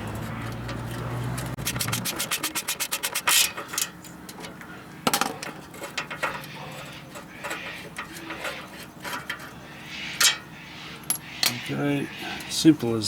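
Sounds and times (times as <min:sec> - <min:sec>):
metallic clank: 0:10.2 - 0:11.6.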